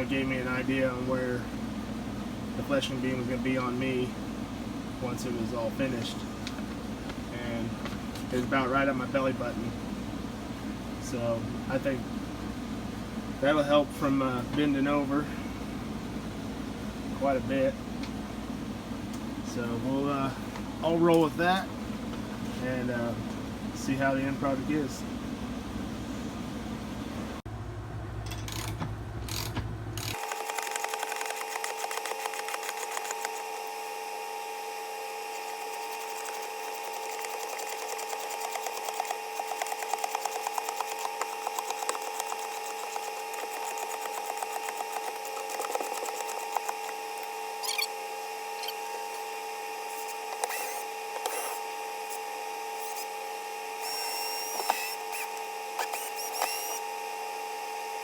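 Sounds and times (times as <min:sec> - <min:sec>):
power drill whining: 0:49.9 - 0:53.2, 0:53.8 - 0:56.9.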